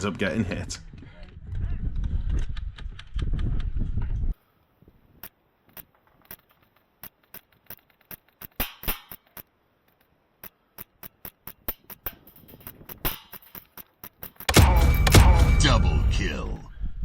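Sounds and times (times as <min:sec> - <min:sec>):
airsoft gunshots: 0:14.5 - 0:16.3.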